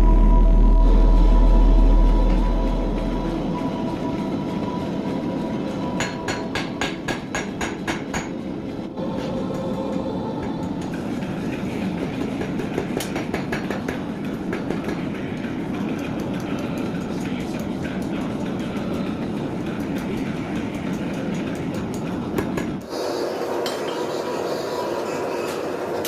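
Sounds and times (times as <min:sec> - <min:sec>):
rumbling workshop noise: 0:00.0 - 0:26.0
hammer strikes on metal: 0:06.0 - 0:08.4, 0:12.0 - 0:15.1.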